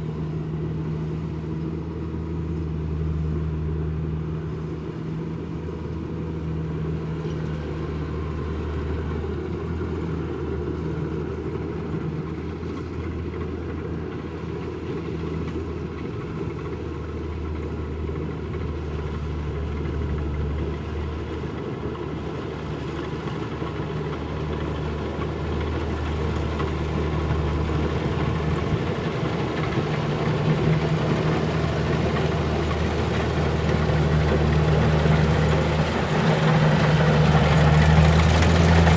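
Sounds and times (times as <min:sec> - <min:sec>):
combine harvester diesel engine: 0:00.0 - 0:38.9.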